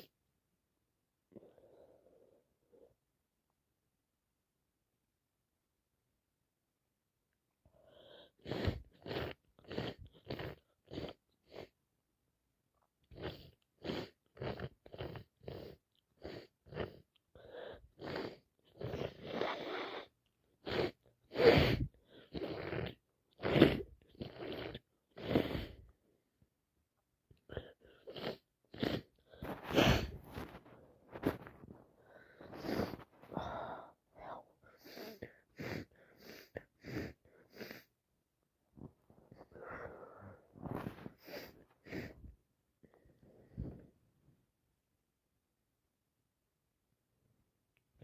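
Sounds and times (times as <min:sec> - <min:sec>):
person sneezing and sniffing: 0:08.0 - 0:11.8, 0:13.1 - 0:25.9, 0:27.5 - 0:37.9, 0:39.3 - 0:42.3.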